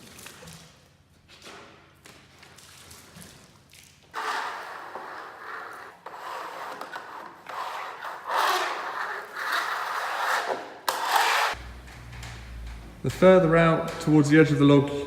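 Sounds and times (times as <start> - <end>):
scraping on wooden boards: 4.2 - 11.6.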